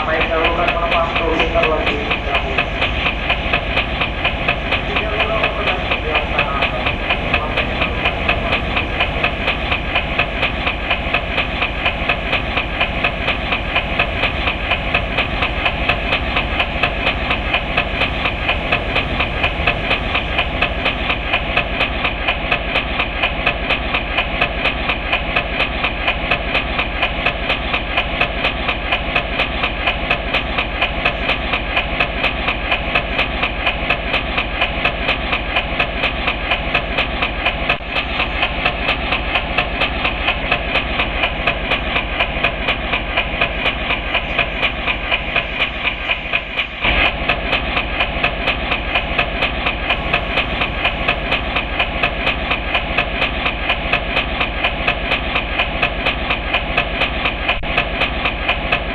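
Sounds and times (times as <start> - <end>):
level-crossing warning bell: 0.0 - 21.9, 49.9 - 52.6.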